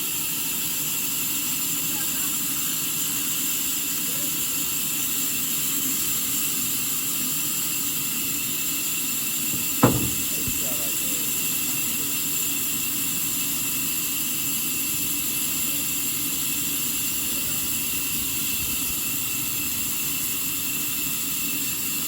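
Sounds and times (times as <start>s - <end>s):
sawmill machinery humming: 9.5s - 12.0s.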